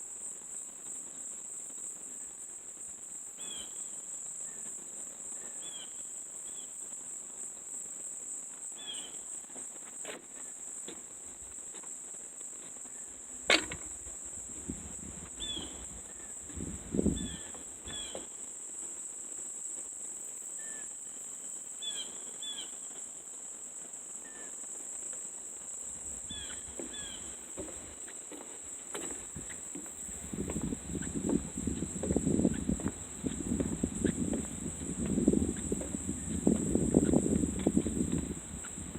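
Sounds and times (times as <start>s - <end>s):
crickets trilling: 0.0s - 38.9s
low thumps: 29.0s - 38.9s.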